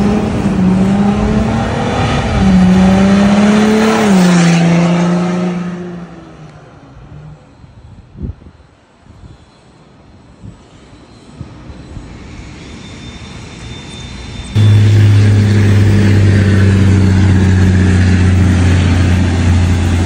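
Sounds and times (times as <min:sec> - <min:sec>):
deep engine drone: 0:14.6 - 0:20.0
truck exhaust rumbling: 0:14.6 - 0:20.0.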